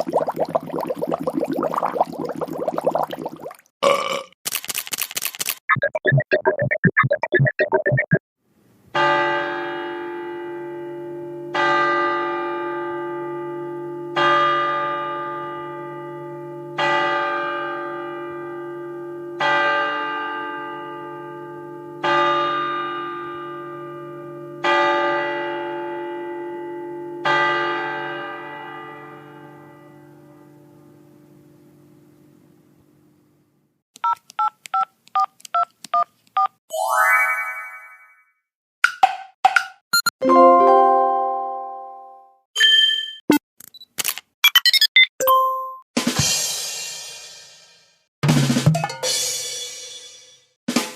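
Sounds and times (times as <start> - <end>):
short choppy sound effect: 5.5 - 8.2.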